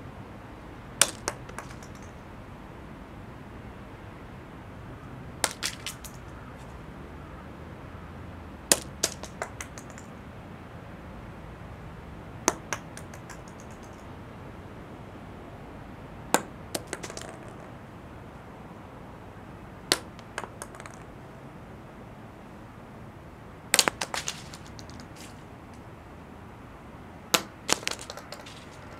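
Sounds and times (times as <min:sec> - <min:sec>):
acorns bouncing on stone: 0:01.0 - 0:02.2, 0:05.4 - 0:06.7, 0:08.7 - 0:10.2, 0:12.5 - 0:14.0, 0:16.3 - 0:17.8, 0:19.9 - 0:21.2, 0:23.7 - 0:25.8, 0:27.4 - 0:28.9.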